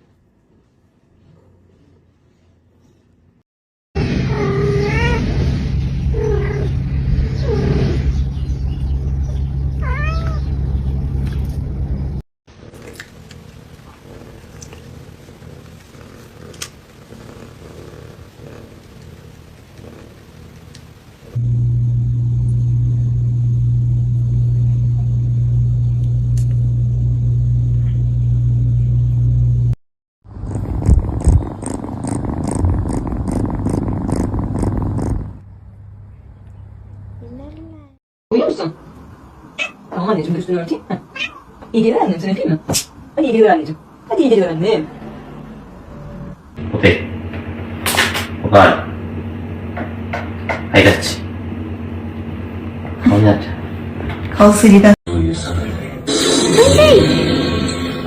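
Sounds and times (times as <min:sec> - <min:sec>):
cat meowing: 0:04.3 - 0:05.3, 0:09.8 - 0:10.5, 0:39.6 - 0:39.9, 0:41.1 - 0:41.5
loud steady low rumble: 0:05.0 - 0:12.2, 0:18.2 - 0:37.3
loud low hum: 0:18.3 - 0:37.9
rough pulsing sound: 0:30.3 - 0:35.4.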